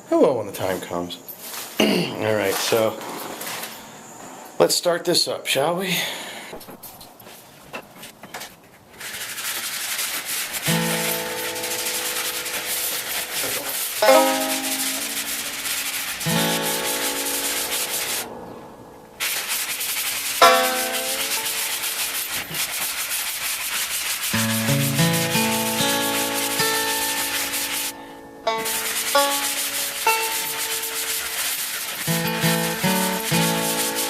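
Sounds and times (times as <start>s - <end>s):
sanding sponge rubbing on wall: 8.9s - 18.3s, 19.2s - 28.0s, 28.6s - 34.0s
background instrumental music: 10.7s - 19.3s, 20.4s - 21.8s, 24.4s - 31.2s, 32.1s - 34.0s.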